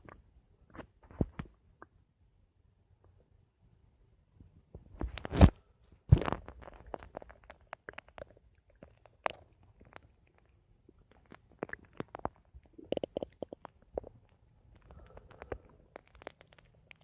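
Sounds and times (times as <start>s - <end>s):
stomach gurgling: 6.1s - 17.0s.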